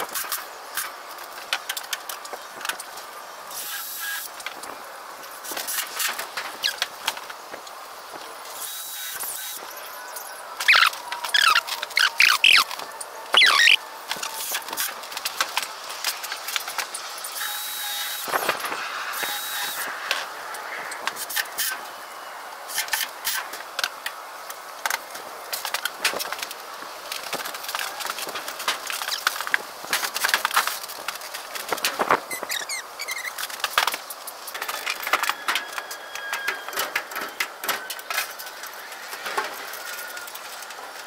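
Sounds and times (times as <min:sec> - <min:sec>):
loud squeaks: 0:10.6 - 0:12.7, 0:13.3 - 0:13.8, 0:32.3 - 0:33.4.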